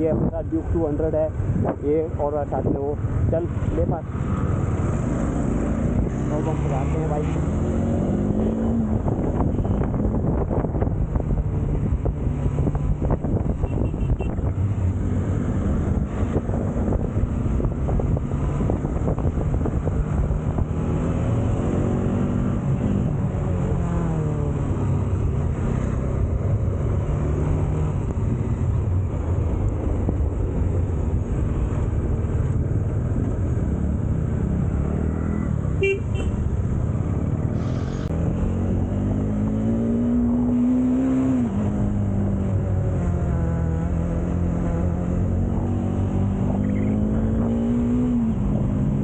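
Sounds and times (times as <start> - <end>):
wind rush: 7.8 - 23.5.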